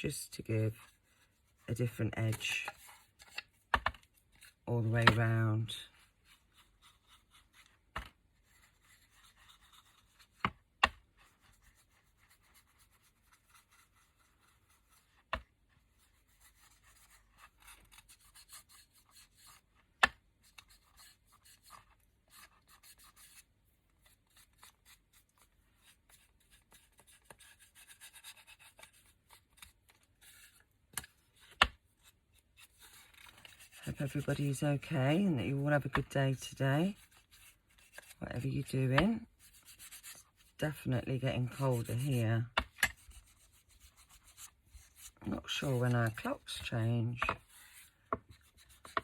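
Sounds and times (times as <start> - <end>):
brush scratching on wood: 32.0 - 49.0.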